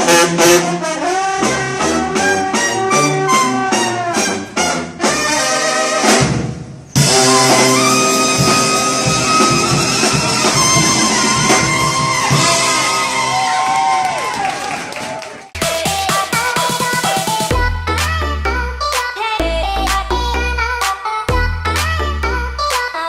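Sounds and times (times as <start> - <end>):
brass band playing jazzy music: 0.0 - 13.4.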